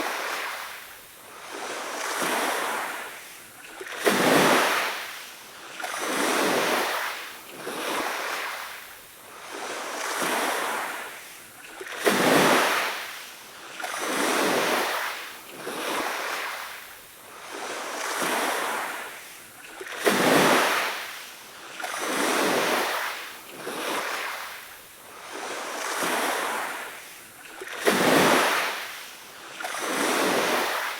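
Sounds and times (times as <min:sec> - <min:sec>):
sea waves washing in: 0:00.0 - 0:30.9
waves crashing: 0:21.8 - 0:30.9.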